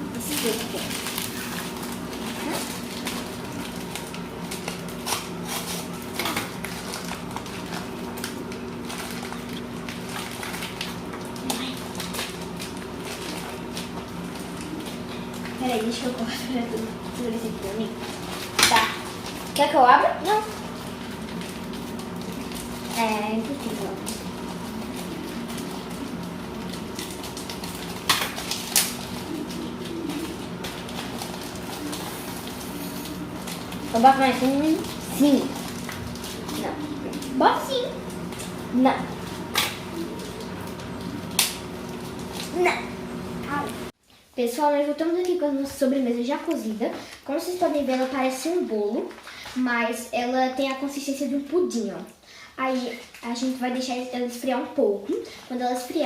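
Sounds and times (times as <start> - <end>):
steady low hum: 0.0 - 44.0
plastic packets rustling: 0.2 - 43.1.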